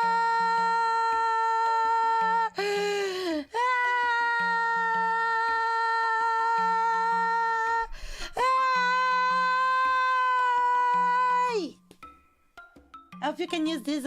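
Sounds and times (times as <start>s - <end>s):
short breath: 7.9s - 8.4s.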